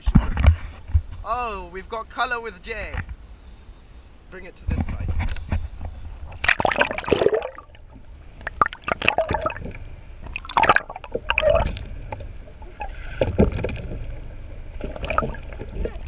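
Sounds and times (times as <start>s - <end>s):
fish splashing in water: 6.4s - 16.0s.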